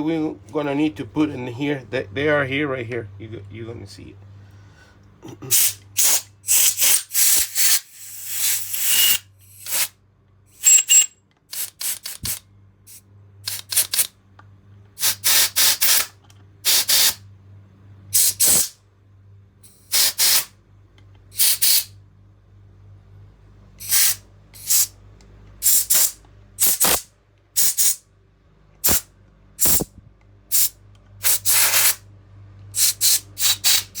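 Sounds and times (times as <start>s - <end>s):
compressed air blow gun hissing: 5.5s - 9.9s, 16.7s - 17.2s, 18.2s - 18.8s, 19.8s - 20.5s, 21.4s - 21.9s, 23.8s - 24.9s, 25.6s - 27.0s, 27.6s - 28.0s, 28.8s - 29.0s, 29.6s - 29.9s, 30.5s - 32.0s, 32.8s - 34.0s.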